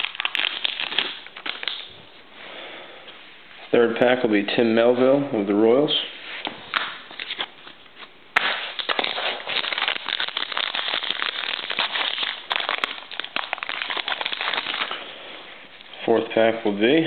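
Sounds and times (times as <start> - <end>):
wrapper crinkling and tearing: 0.0 - 1.9, 8.4 - 15.0.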